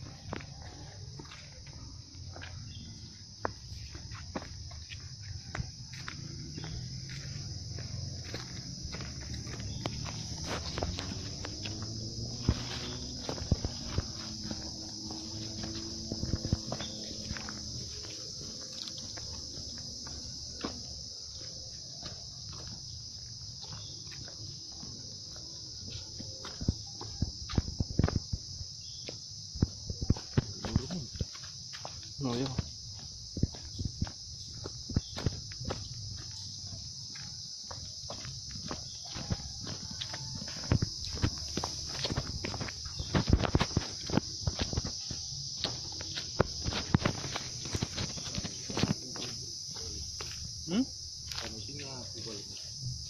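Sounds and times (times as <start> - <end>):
crickets chirping: 0.0 - 53.0
insects shrilling: 37.0 - 53.0.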